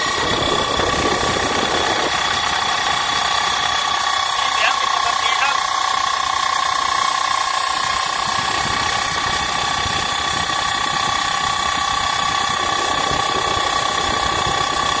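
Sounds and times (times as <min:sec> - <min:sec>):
blower whining: 0:00.0 - 0:15.0
fainter high whine: 0:00.0 - 0:15.0
noisy hum: 0:00.0 - 0:15.0.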